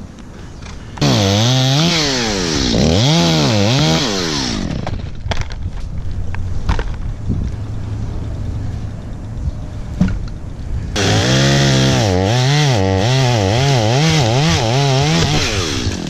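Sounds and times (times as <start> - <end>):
chainsaw cutting wood: 1.0 - 5.2, 11.0 - 16.0.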